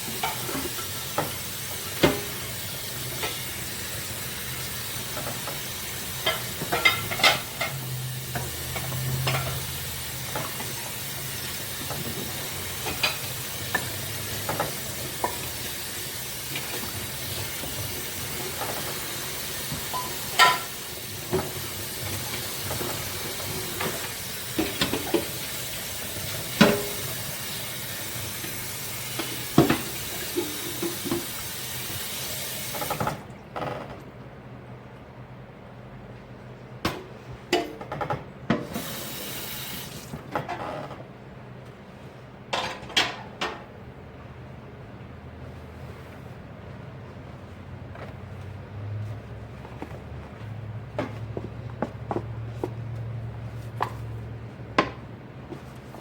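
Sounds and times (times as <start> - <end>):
water running hiss: 0.0 - 33.0, 38.7 - 40.2
dishes clinking: 6.2 - 7.8, 19.9 - 20.8.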